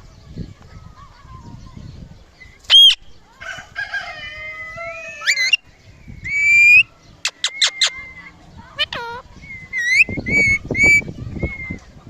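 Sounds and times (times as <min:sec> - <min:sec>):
parakeet shrieking and chattering: 0:05.2 - 0:05.6, 0:06.3 - 0:08.0, 0:08.8 - 0:11.0.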